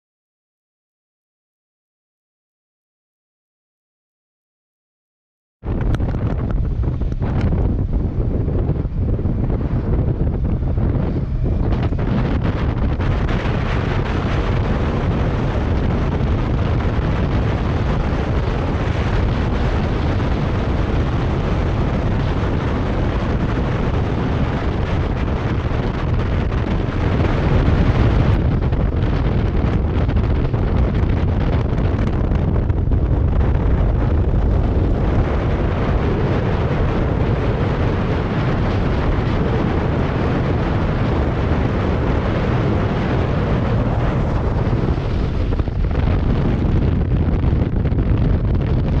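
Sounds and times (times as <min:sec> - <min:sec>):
road noise: 0:05.6 - 0:49.0
wind buffeting microphone: 0:05.6 - 0:49.0
motorcycle engine: 0:05.7 - 0:39.6.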